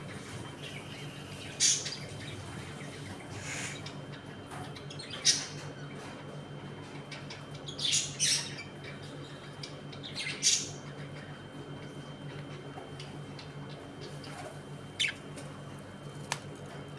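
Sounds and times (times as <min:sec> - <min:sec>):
budgerigars squawking: 0:15.0 - 0:15.2.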